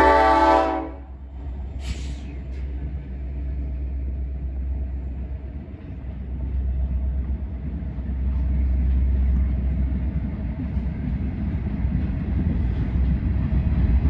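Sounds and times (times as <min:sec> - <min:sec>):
locomotive air horn blast: 0:00.0 - 0:01.1
train rumble: 0:00.0 - 0:14.0.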